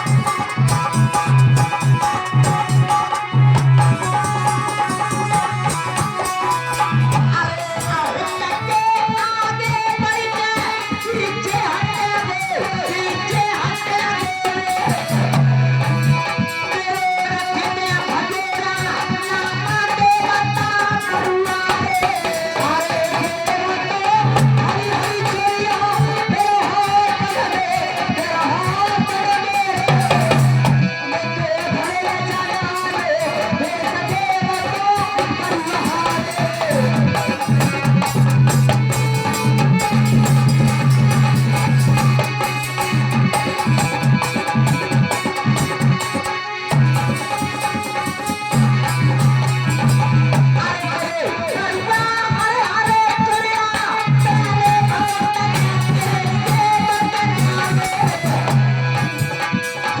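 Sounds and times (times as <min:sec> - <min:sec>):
plucked-string melody: 0:00.0 - 0:09.3
drum beat: 0:00.0 - 0:30.8, 0:32.1 - 1:00.0.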